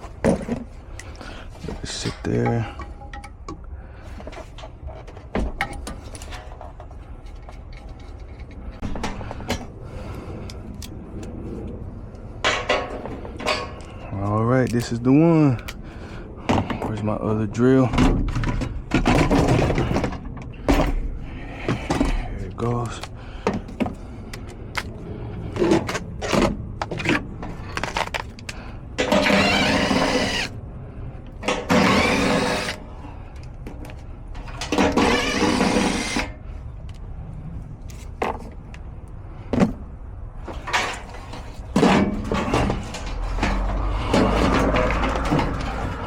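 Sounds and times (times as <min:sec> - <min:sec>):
metal parts knocking and clanking: 0:01.6 - 0:03.6, 0:12.4 - 0:14.9, 0:17.9 - 0:24.0, 0:25.5 - 0:30.5, 0:40.4 - 0:46.0
cordless drill running: 0:29.1 - 0:30.5, 0:31.7 - 0:32.8, 0:34.8 - 0:36.3.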